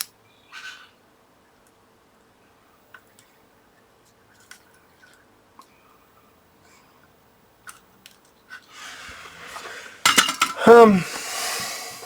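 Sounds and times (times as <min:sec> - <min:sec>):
long breathy exhale: 0:08.7 - 0:10.0, 0:11.0 - 0:12.0
metal tools clinking: 0:10.1 - 0:10.6
person groaning: 0:10.6 - 0:12.0.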